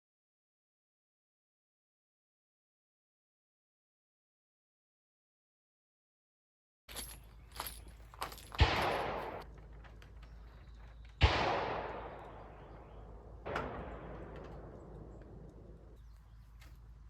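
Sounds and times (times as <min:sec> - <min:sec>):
pistol gunshots: 0:08.3 - 0:09.5, 0:11.2 - 0:16.0
gunshot echo: 0:08.5 - 0:09.5, 0:11.2 - 0:16.0.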